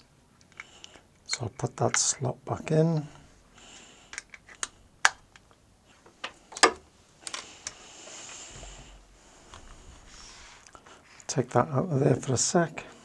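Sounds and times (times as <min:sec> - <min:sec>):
soft rustle: 0:07.0 - 0:11.3.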